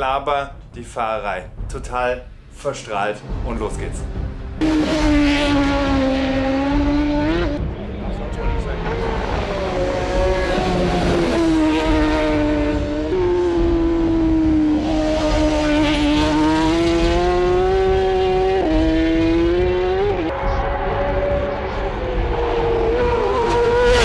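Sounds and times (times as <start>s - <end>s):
racing motorcycle engine revving: 4.6s - 7.6s, 8.4s - 24.0s
gear changes: 4.6s - 24.0s.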